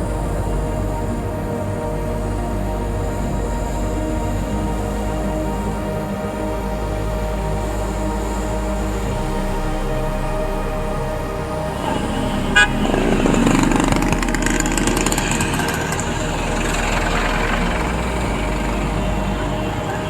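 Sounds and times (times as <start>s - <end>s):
background music: 0.0s - 20.0s
street noise: 0.0s - 20.0s
vehicle noise: 11.5s - 20.0s.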